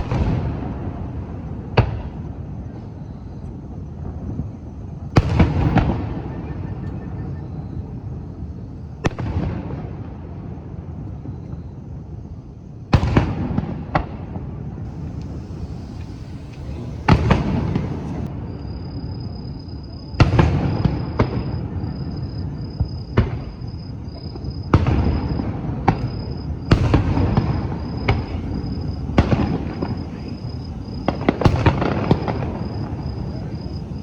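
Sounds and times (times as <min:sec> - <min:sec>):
firework shells booming: 0:05.2 - 0:06.9, 0:14.9 - 0:18.3, 0:24.2 - 0:34.0.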